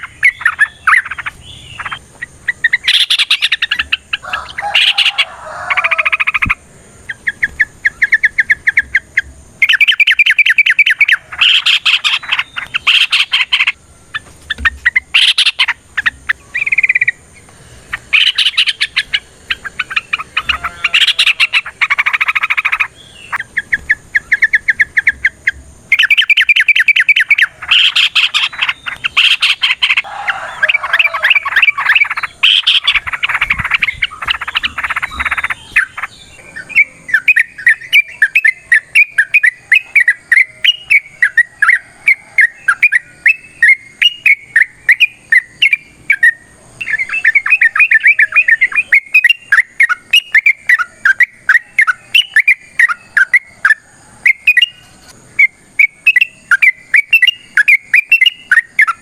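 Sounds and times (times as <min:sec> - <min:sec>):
birds chattering calls: 0:00.0 - 0:59.0.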